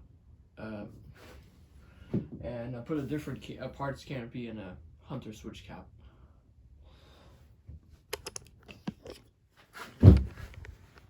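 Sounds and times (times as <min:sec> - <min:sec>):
light handling clicks and taps: 0:08.1 - 0:09.2
dull heavy thump: 0:10.0 - 0:10.5.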